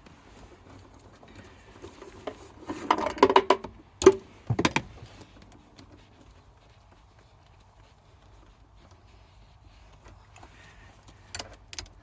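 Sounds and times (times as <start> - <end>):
car battery knocking and scraping: 1.8 - 5.2.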